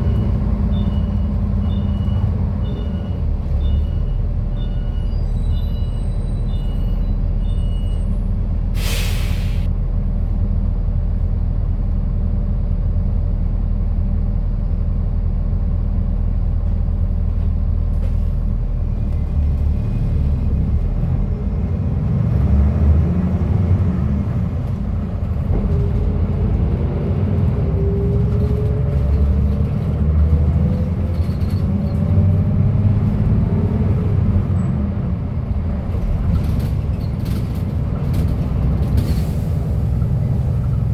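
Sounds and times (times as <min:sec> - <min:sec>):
bus diesel engine: 0:00.0 - 0:40.9
short air hiss: 0:08.8 - 0:09.7.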